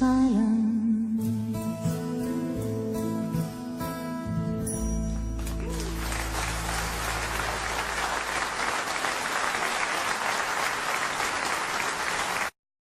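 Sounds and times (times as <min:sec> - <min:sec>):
audience applauding: 0:05.4 - 0:12.6.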